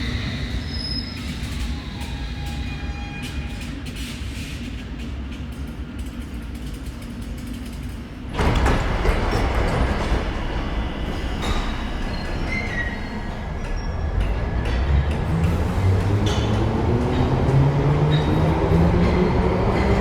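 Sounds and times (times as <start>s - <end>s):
low rumble of underground train: 0.0s - 20.0s
train rushing through: 8.2s - 20.0s
high wheel squeals: 11.0s - 15.0s.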